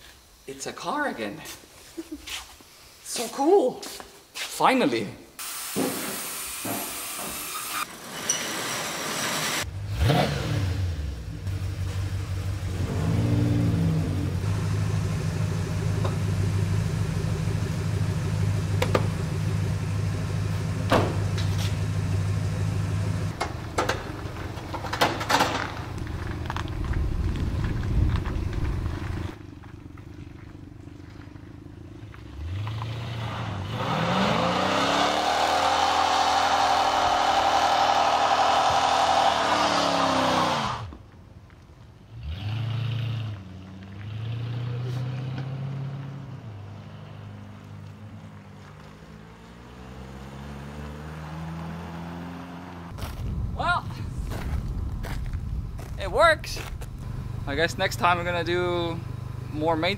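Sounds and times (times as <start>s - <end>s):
car engine starting and revving: 9.4s - 24.9s, 25.5s - 41.0s, 42.1s - 53.3s.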